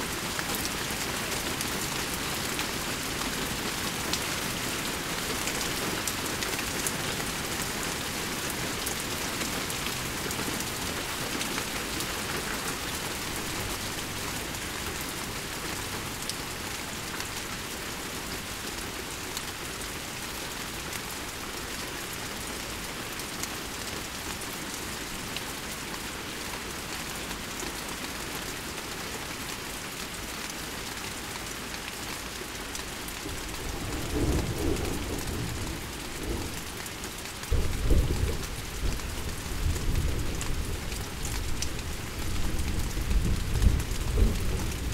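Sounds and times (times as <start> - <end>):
steady rain falling: 0.0 - 44.9
low rumble of thunder: 33.3 - 36.7, 37.5 - 44.9.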